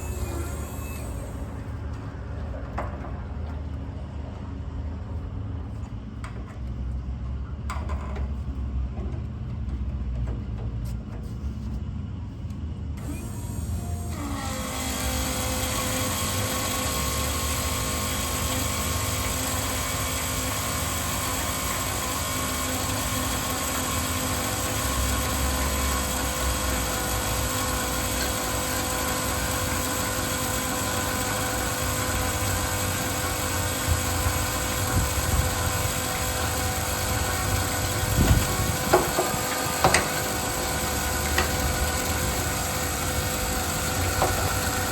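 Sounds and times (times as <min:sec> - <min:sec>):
motor whining: 0:00.0 - 0:02.1, 0:13.0 - 0:44.9.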